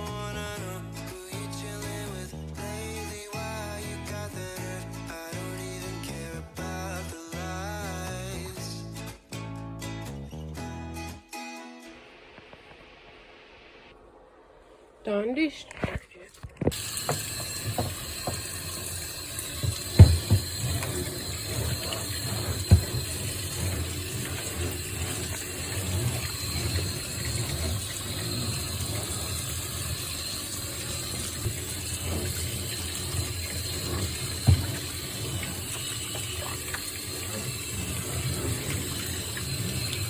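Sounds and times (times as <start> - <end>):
scrubbing and sloshing water: 16.3 - 40.0.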